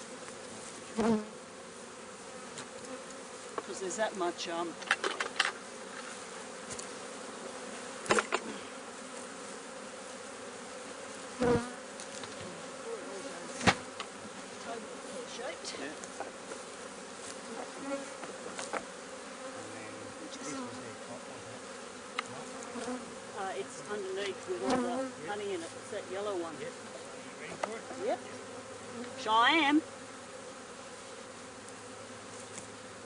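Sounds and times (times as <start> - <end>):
honey bees buzzing: 0.0 - 33.0.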